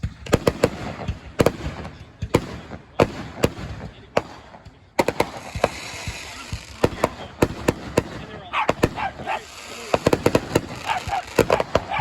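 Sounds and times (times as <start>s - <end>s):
fireworks bangs: 0.0s - 12.0s
fireworks hissing crackle: 4.3s - 12.0s.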